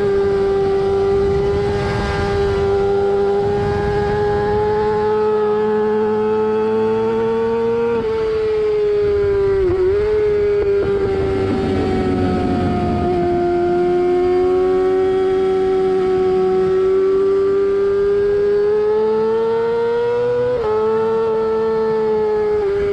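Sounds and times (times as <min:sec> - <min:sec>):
motorcycle engine screaming: 0:09.1 - 0:17.2.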